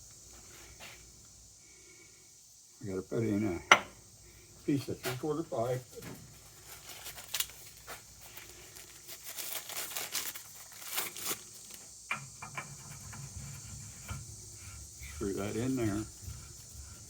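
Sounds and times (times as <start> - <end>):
rustling: 5.0 - 17.0
parts clicking and knocking: 12.0 - 16.6.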